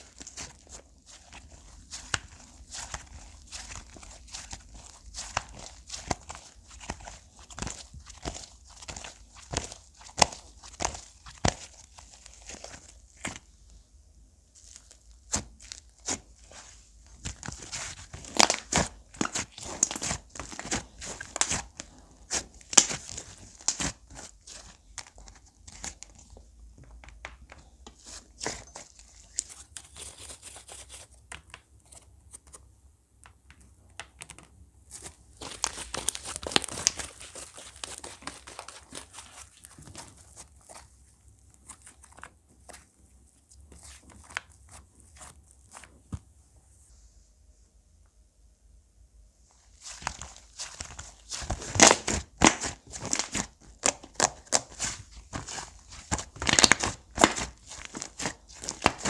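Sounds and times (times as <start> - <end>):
slime squishing: 0.0 - 13.8, 14.4 - 31.6, 34.9 - 46.2, 49.6 - 59.0
slime crackling and popping: 14.6 - 26.2, 35.4 - 40.0, 49.8 - 59.0.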